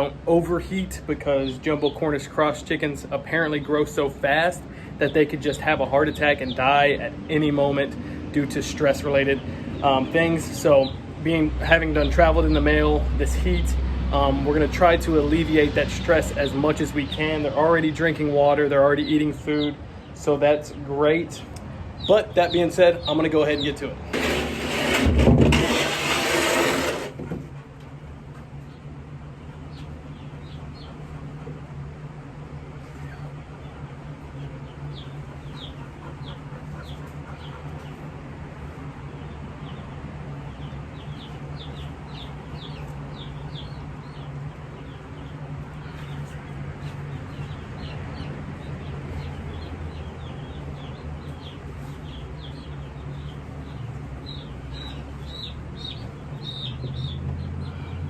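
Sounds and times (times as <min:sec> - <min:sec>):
fan humming: 0:00.0 - 0:36.5
chicks peeping: 0:00.6 - 0:24.4, 0:32.7 - 0:58.0.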